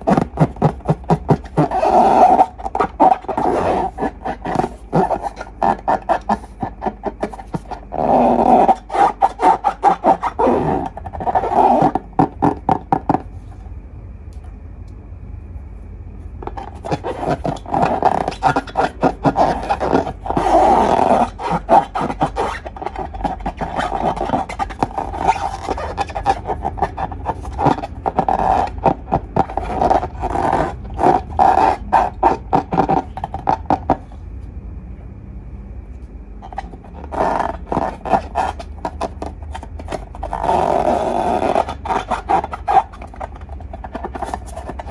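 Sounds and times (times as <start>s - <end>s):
slime squelching by hand: 0.0s - 13.2s, 16.4s - 34.1s.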